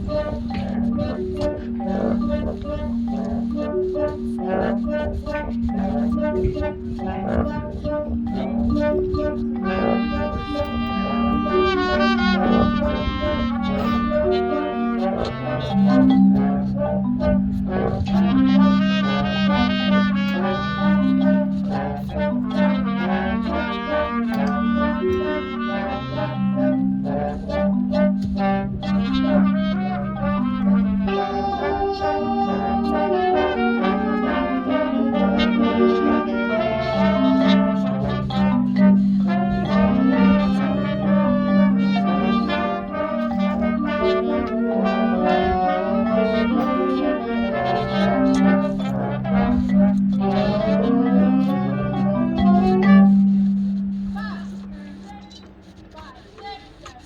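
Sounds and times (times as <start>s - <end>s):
marching band playing: 0.0s - 55.1s.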